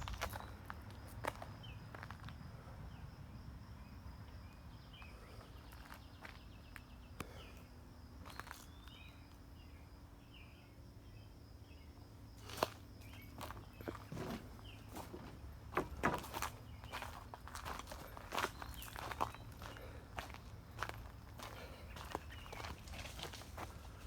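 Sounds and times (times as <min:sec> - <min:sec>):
high insect drone: 0:00.0 - 0:24.0
bird chirps: 0:16.4 - 0:20.0, 0:20.8 - 0:23.0.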